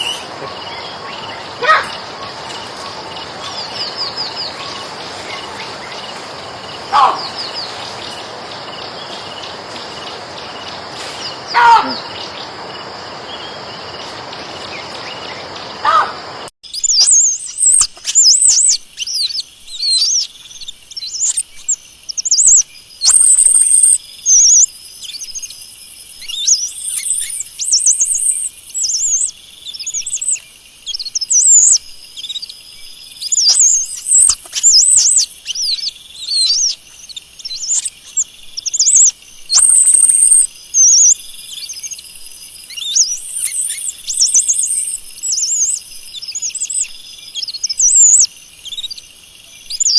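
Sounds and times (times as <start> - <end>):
monkeys chirping: 0.0 - 8.2.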